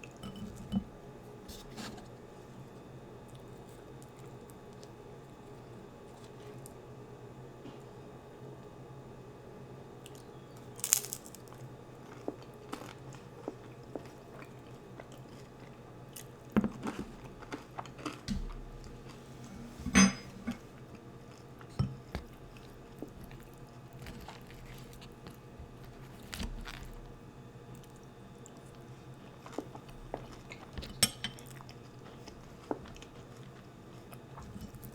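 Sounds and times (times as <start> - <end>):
person chewing crunchy food: 10.1 - 19.2, 20.6 - 34.9.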